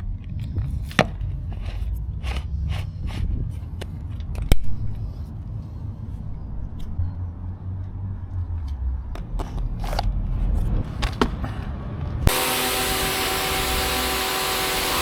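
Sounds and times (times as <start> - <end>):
pressure washer motor hum: 12.3 - 15.0
water jet hissing: 12.3 - 15.0.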